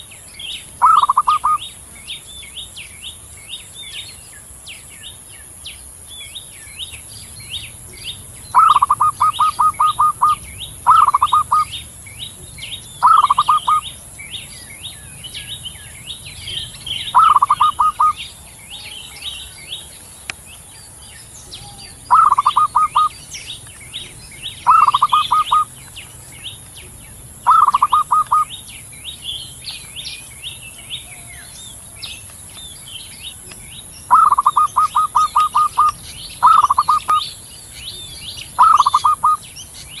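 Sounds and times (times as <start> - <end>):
small birds chirping: 0.0 - 40.0
dove cooing: 0.8 - 1.6, 8.5 - 11.8, 13.0 - 13.9, 16.9 - 19.4, 21.5 - 23.2, 24.6 - 25.8, 27.4 - 28.5, 34.1 - 37.2, 38.6 - 39.4.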